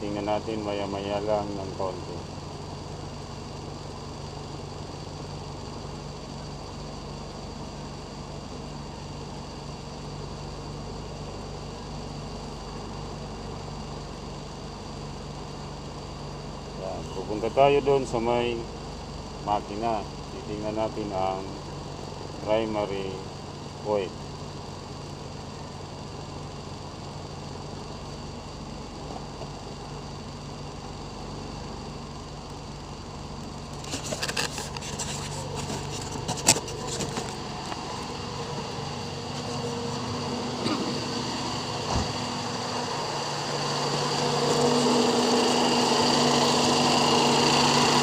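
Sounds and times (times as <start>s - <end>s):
car engine idling: 0.0s - 48.0s
clicks and knocks from engine work: 33.5s - 37.8s.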